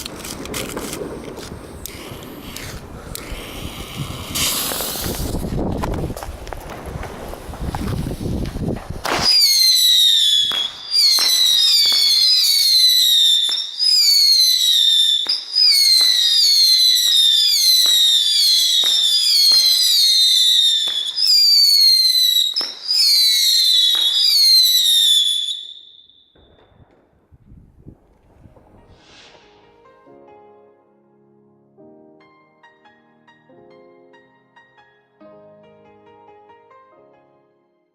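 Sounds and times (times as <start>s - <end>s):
firework launch cracks: 0.0s - 29.6s
falling firework whistles: 3.4s - 5.6s, 9.0s - 27.0s, 28.5s - 29.8s.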